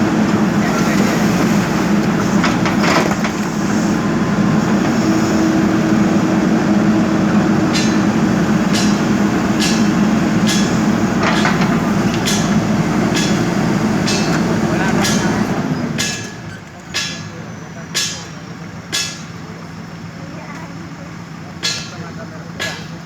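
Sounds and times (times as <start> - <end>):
diesel engine running: 0.0 - 23.0
sharp knocks: 7.7 - 15.3.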